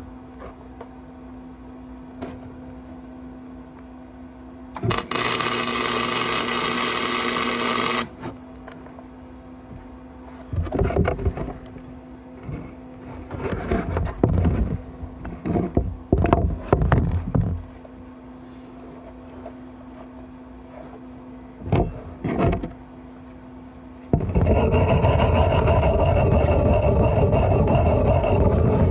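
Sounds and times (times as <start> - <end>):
steady low hum: 0.0 - 28.9
welding arc crackling: 4.8 - 8.1
metal scraping and knocking: 24.2 - 28.9.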